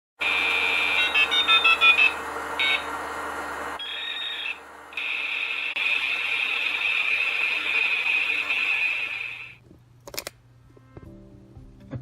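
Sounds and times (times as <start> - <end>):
high-pitched hiss: 3.8 - 9.6.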